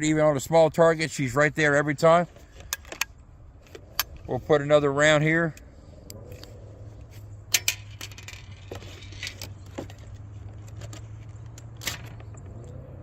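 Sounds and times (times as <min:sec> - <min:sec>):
steady low hum: 0:02.3 - 0:12.7
gun loading metallic clicks: 0:02.6 - 0:04.3.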